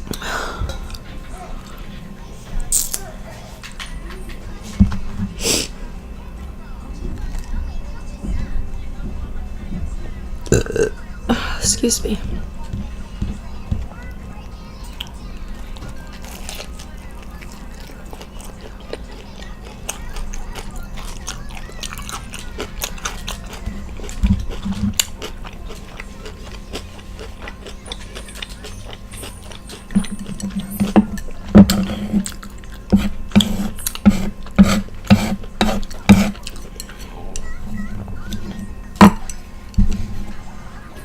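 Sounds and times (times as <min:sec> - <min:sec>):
chewing food: 0:14.9 - 0:40.9
loud crunchy chews: 0:15.8 - 0:37.5.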